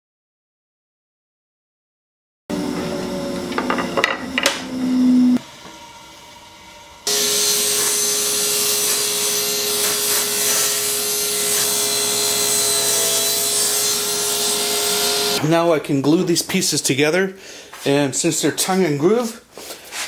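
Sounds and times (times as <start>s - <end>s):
woodworking power tool running: 2.5s - 15.7s.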